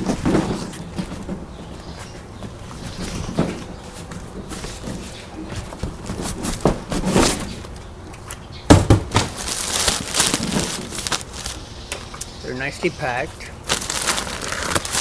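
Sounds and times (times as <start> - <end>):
loud thump: 8.7 - 9.3.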